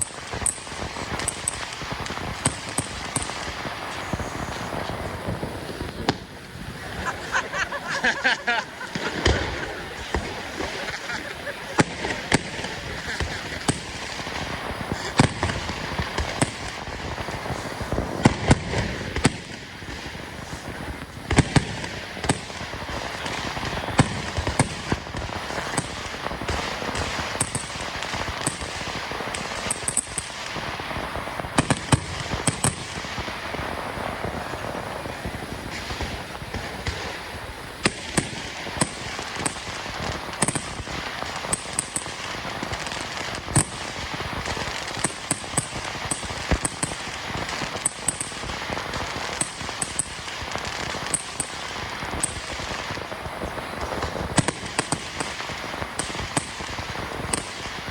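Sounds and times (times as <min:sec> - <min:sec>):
fireworks bangs: 0:00.0 - 0:57.9
crowd voices: 0:03.7 - 0:16.2, 0:53.0 - 0:54.2.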